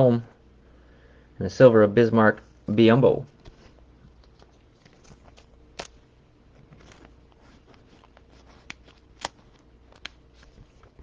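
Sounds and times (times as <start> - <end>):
cards rustling in plastic sleeves: 3.3 - 11.0.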